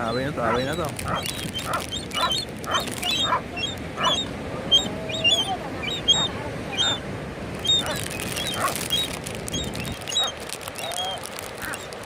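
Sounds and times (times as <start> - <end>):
raccoons chirping and squealing: 0.0 - 7.0, 7.6 - 12.0
raccoon nasal calls: 0.2 - 7.0, 7.6 - 12.0.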